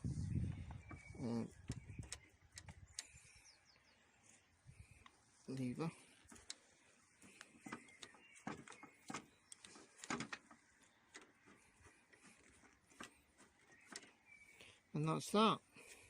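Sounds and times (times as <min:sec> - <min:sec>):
faint clicks and taps: 0:06.2 - 0:14.2.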